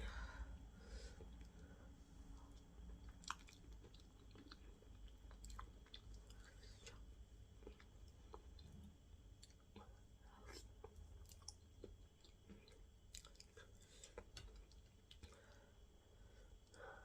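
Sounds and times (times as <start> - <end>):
close-miked chewing: 2.4 - 7.0, 7.6 - 15.6.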